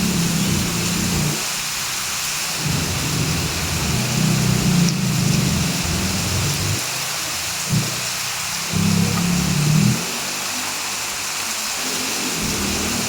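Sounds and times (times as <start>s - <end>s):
heavy rain hissing: 0.0s - 13.0s.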